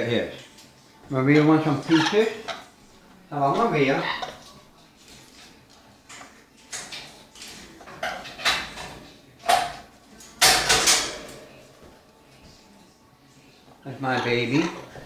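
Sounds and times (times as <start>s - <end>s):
parrots squawking and chattering: 1.4s - 2.8s, 3.4s - 5.2s, 6.2s - 8.9s, 13.9s - 15.0s.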